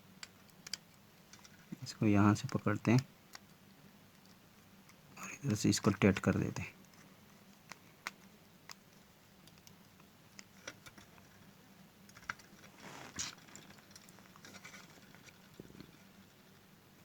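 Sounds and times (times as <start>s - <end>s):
soft scrape: 12.7s - 13.4s.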